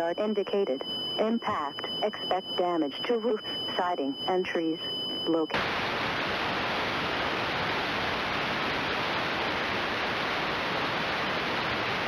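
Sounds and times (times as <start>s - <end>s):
radio static hiss: 5.6s - 12.0s.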